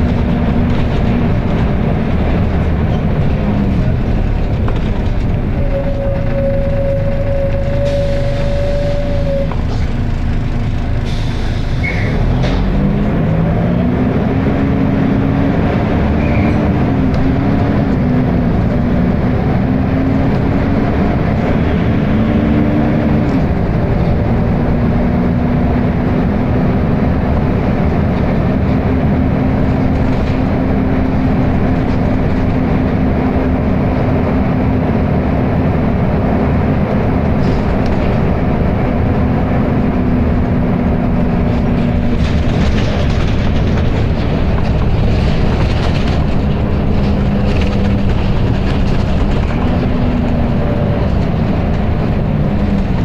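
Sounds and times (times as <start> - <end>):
bus engine cooling fan droning: 0.0 - 53.0.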